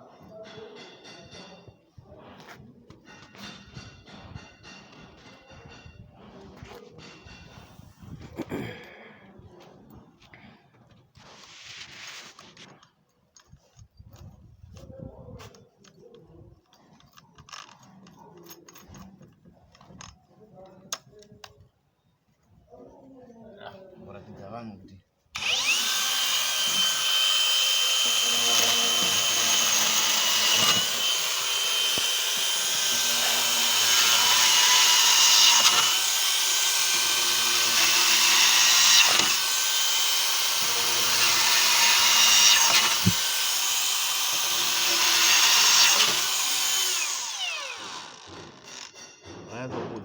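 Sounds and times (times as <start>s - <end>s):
electric drill whining: 25.4s - 49.3s.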